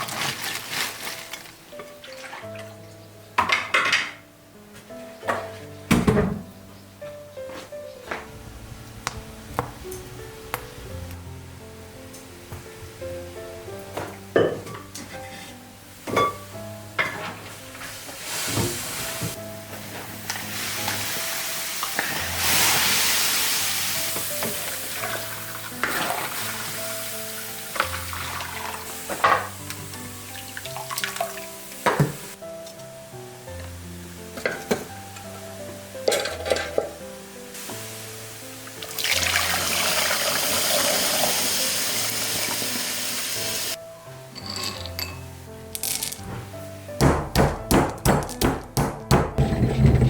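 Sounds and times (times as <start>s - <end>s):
background music: 0.0s - 50.0s
syrup sizzling in a pan: 19.8s - 32.4s, 37.2s - 43.8s.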